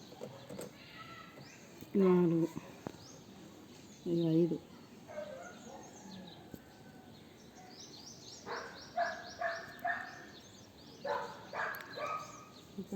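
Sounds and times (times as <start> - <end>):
birds chirping: 0.0 - 12.9
harsh bird calls: 7.2 - 12.9.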